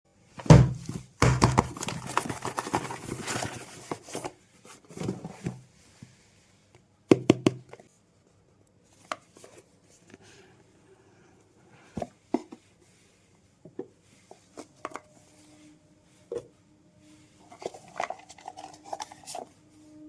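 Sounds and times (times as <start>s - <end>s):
packaging knocks and clicks: 0.5s - 4.0s
packaging rustling and scraping: 0.7s - 5.7s, 17.4s - 19.6s.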